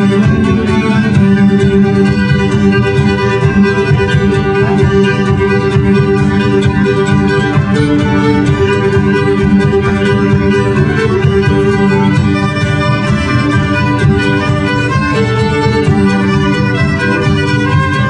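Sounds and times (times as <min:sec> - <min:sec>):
accordion: 0:00.0 - 0:18.0
fiddle: 0:00.0 - 0:18.0.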